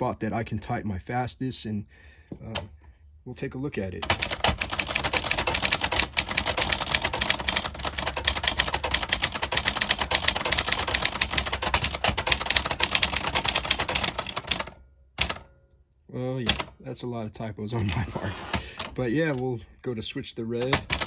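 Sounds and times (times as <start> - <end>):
manual typewriter clatter: 4.0 - 15.5, 16.5 - 16.8, 17.8 - 19.6, 20.6 - 21.0.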